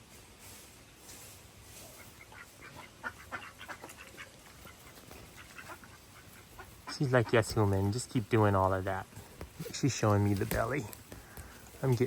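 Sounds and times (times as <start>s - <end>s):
distant ducks quacking: 1.8s - 9.0s.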